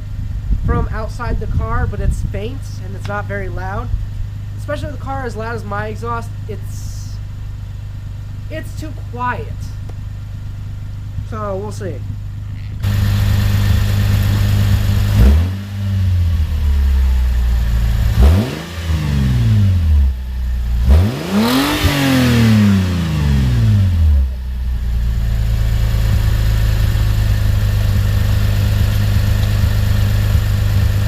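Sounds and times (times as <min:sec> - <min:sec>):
car engine idling and revving: 0:00.0 - 0:31.0.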